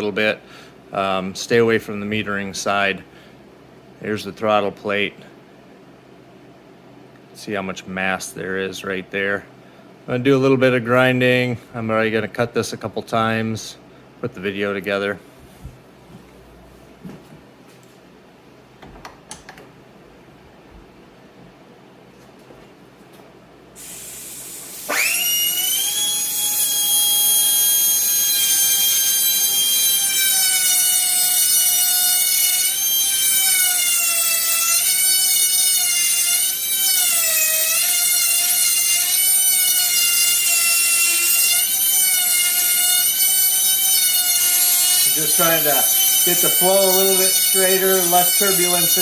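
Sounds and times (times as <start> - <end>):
rotary grinding tool whining: 24.1 - 49.0.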